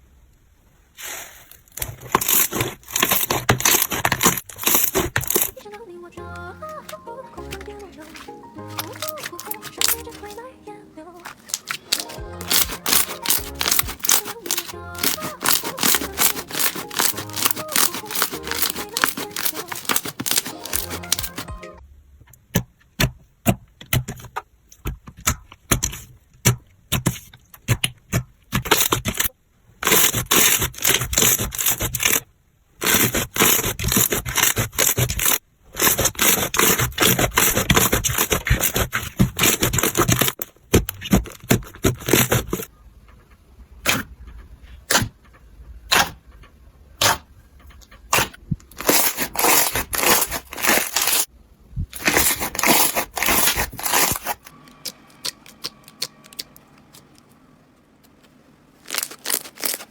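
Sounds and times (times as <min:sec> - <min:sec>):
slime crackling and popping: 0:07.5 - 0:10.4, 0:11.3 - 0:21.6, 0:52.0 - 0:57.3, 0:58.8 - 0:59.9.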